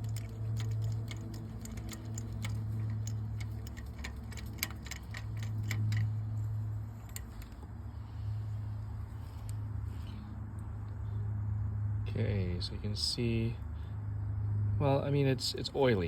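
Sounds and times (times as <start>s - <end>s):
ratchet clicking: 0.0s - 7.6s.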